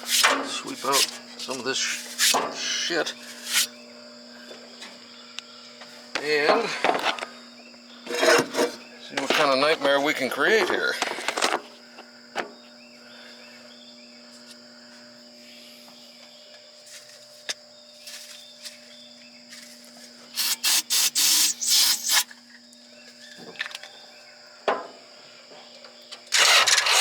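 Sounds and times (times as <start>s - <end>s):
faint steady hum: 0.0s - 27.0s
brush rubbing strokes: 3.2s - 3.7s.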